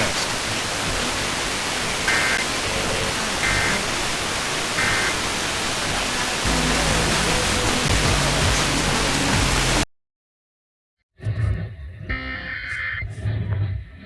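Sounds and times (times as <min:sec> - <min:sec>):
radio music: 0:00.0 - 0:09.8, 0:11.2 - 0:14.0
radio static hiss: 0:00.0 - 0:09.8
two-tone digital data bursts: 0:03.4 - 0:03.8.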